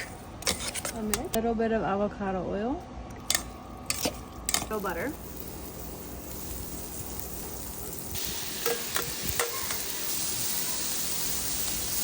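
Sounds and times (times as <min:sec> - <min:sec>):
metal utensil clinking on griddle: 0:03.3 - 0:12.0
shrimp sizzling on a griddle: 0:04.6 - 0:12.0.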